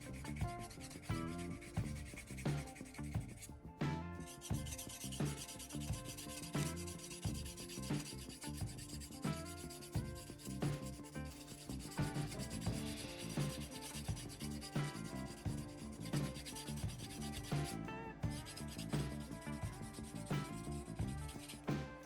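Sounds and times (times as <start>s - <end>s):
background music: 0.0s - 22.0s.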